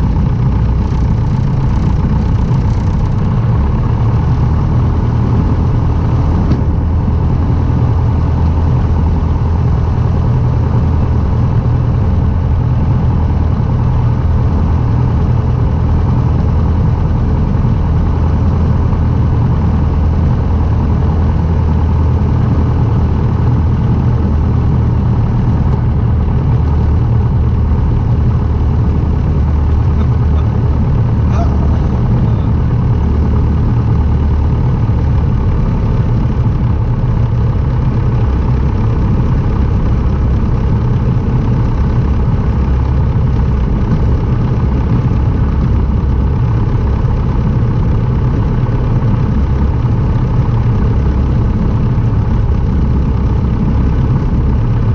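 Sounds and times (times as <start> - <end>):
light aircraft engine drone: 0.0 - 54.9.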